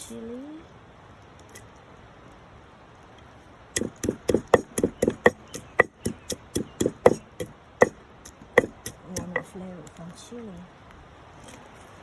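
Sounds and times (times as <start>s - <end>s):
pestle pounding in a mortar: 3.8s - 9.5s.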